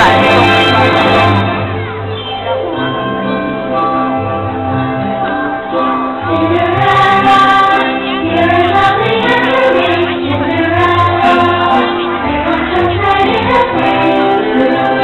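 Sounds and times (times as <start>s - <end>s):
voices singing: 0.0s - 1.6s, 6.3s - 15.0s
orchestral music: 0.0s - 15.0s.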